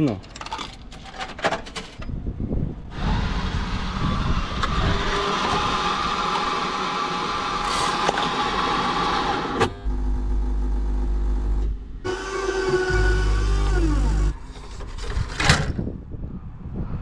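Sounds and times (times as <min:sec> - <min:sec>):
vending machine whirring: 0:04.5 - 0:15.2.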